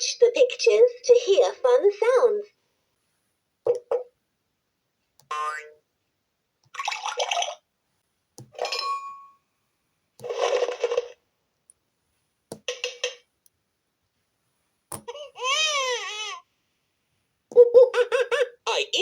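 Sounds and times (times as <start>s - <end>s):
dishes and glass clinking effects: 8.6s - 9.4s.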